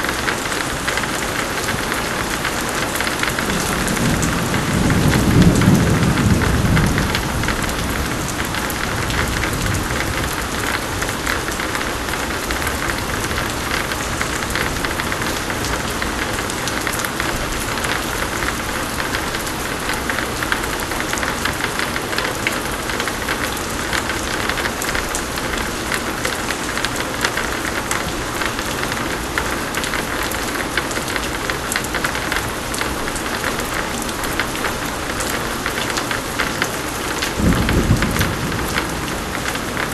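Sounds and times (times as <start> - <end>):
heavy rain pouring: 0.0 - 39.9
low thunder rumble: 3.4 - 16.5, 37.3 - 39.9.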